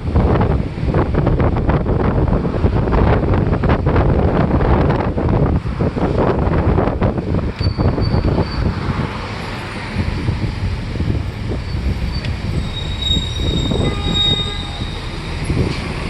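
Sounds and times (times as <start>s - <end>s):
bus road rumble: 0.0s - 16.0s
thin high squeal: 7.6s - 8.7s, 11.6s - 15.2s.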